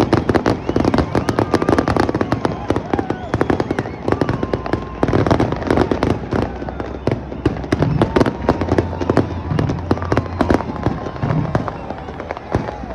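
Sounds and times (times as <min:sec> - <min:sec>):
fireworks bangs and crackles: 0:00.0 - 0:12.9.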